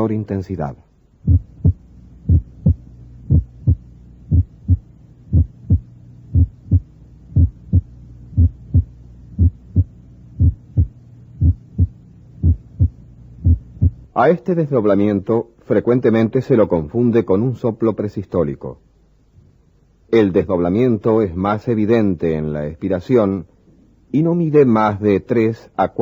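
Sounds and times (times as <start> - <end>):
low recording hum: 0.0 - 26.0
heartbeat: 1.2 - 14.1.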